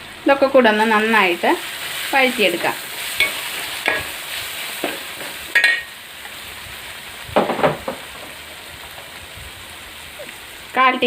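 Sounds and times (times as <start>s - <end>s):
masala sizzling in a pan: 0.0s - 11.0s
spoon scraping a pan: 3.0s - 5.9s.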